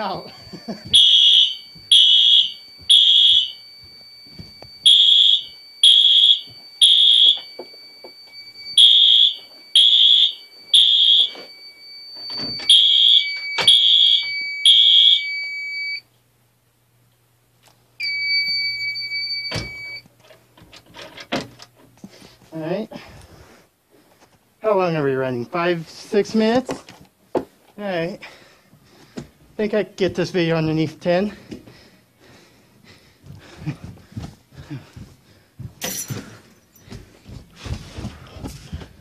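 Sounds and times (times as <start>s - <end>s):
fire alarm beeps: 0.0s - 16.1s, 18.0s - 20.1s.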